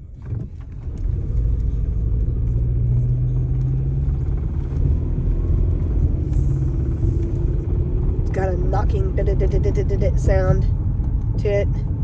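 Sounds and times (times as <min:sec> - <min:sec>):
car engine rumbling: 0:00.0 - 0:12.0.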